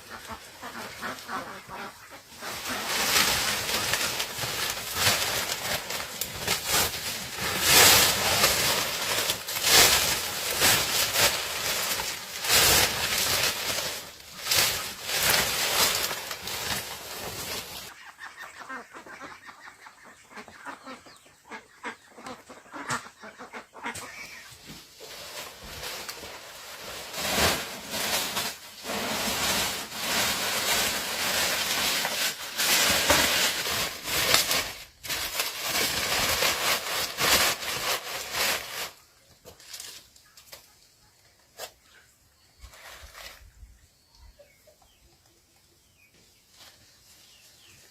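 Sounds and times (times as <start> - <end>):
chickens clucking: 0.0 - 6.0, 14.5 - 34.6
rustling and handling noise: 0.0 - 17.9, 24.0 - 41.8.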